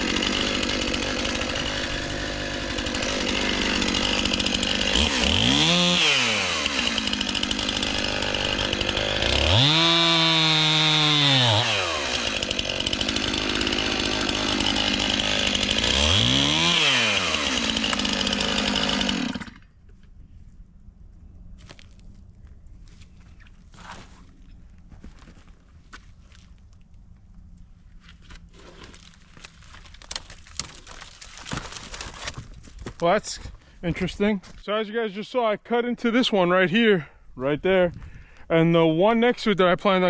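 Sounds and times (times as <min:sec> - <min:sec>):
chainsaw cutting tree trunk: 0:00.0 - 0:19.6, 0:28.6 - 0:32.6.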